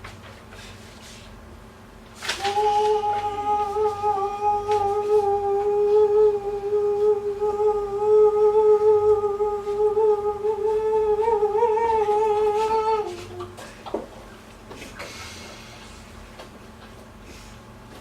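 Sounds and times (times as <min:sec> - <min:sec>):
person humming a long note: 0:02.2 - 0:13.8.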